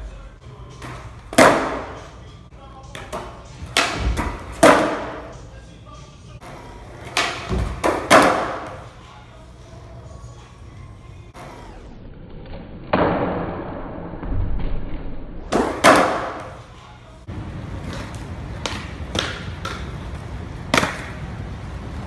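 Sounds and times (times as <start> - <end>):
skateboard wheels rolling: 0.4 - 5.6, 6.4 - 12.0, 15.5 - 22.0
skateboard clacking and thudding: 0.6 - 5.6, 6.4 - 11.7, 15.5 - 21.2.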